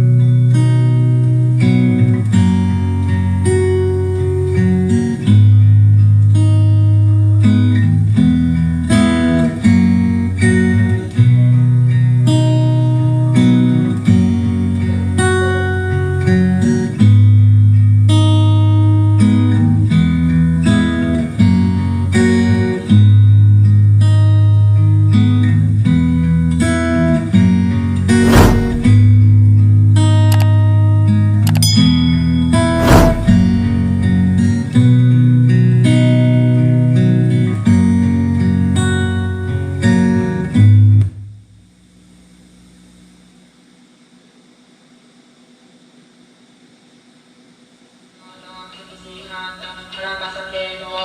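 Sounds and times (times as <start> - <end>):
acoustic guitar music with heavy bass: 0.0 - 31.4, 32.3 - 41.0
brief thump: 28.2 - 29.4, 32.8 - 34.5.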